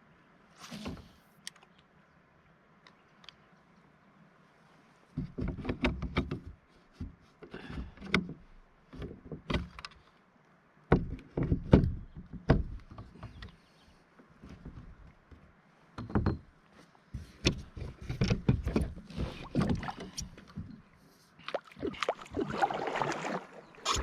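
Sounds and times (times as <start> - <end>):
hollow knocks on plastic kayak hull: 10.9 - 13.4.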